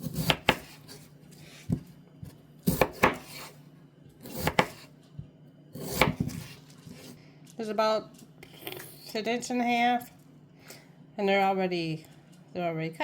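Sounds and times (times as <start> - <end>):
knife cutting on a cutting board: 0.0 - 3.6, 4.2 - 5.0, 5.7 - 7.2.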